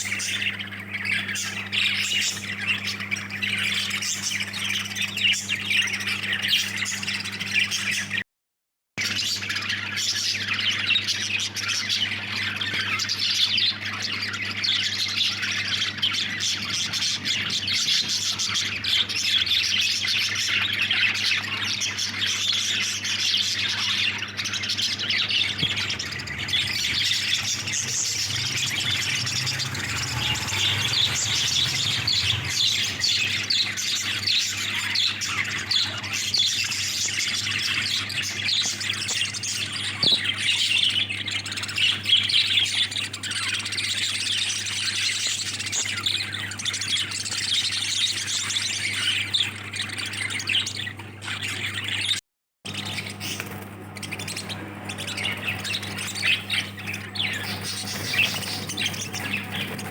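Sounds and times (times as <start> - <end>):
budgerigars chattering: 0.0 - 8.2, 9.0 - 59.9.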